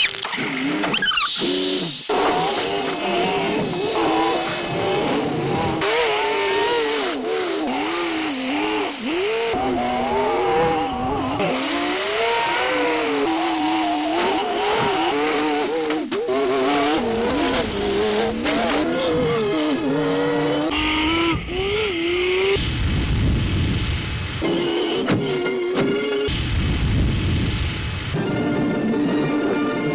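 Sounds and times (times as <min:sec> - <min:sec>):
wavering vehicle whine: 0:03.4 - 0:22.7
deep rumble: 0:20.9 - 0:24.4, 0:26.3 - 0:28.2.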